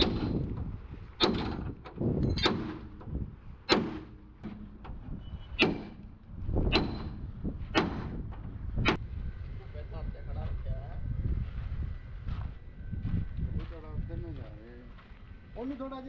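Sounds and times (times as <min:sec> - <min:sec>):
hammer blows on steel frame: 0:00.0 - 0:09.0
low background rumble: 0:00.0 - 0:16.0.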